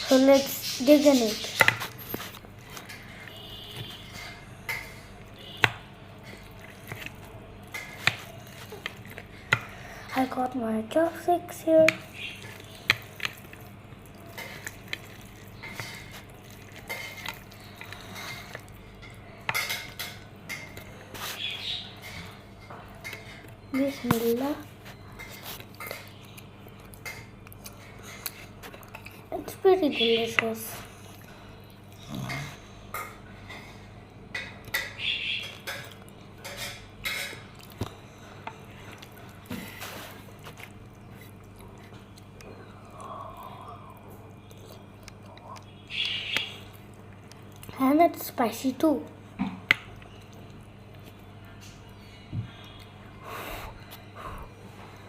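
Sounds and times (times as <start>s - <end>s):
person eating noodles: 12.0s - 23.4s.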